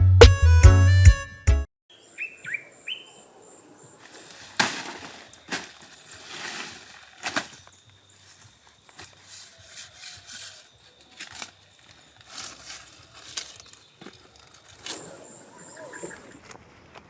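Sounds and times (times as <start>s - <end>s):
short crackles and rustles: 4.0s - 15.1s.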